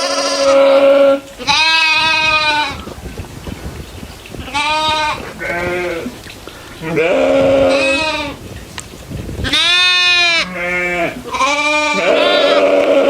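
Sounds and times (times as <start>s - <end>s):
goats bleating: 0.0s - 3.0s, 4.4s - 6.2s, 6.8s - 8.4s, 9.4s - 13.0s.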